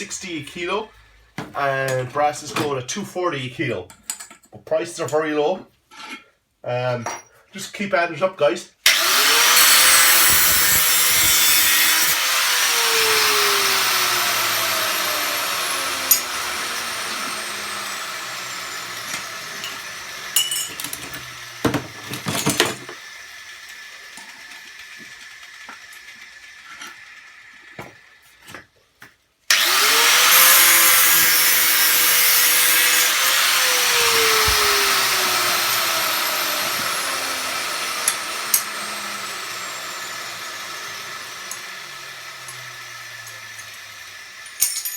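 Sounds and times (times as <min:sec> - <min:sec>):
power tool cutting metal: 0:08.9 - 0:28.2, 0:29.5 - 0:44.9.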